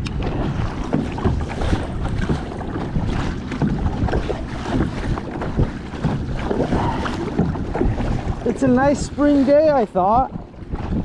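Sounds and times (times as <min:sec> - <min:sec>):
water lapping against hull: 0:00.0 - 0:11.0
wind buffeting microphone: 0:00.0 - 0:11.0.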